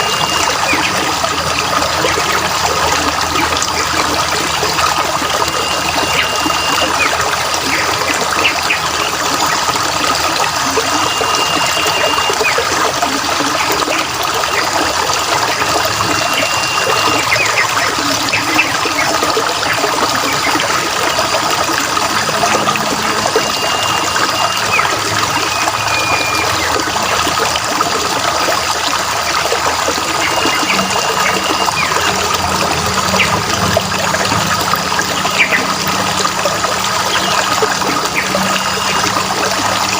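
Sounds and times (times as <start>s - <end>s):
whistled bird calls: 0.0s - 1.1s, 5.3s - 9.2s, 10.8s - 12.8s, 15.6s - 21.5s, 22.3s - 27.2s, 30.1s - 32.3s, 35.2s - 35.8s
stream water trickling: 0.0s - 39.9s.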